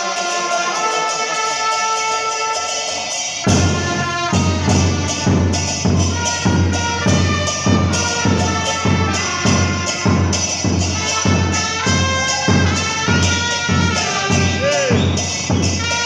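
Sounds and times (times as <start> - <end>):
trumpets playing a melody: 0.0 - 16.0
bass drum beating: 3.5 - 16.0.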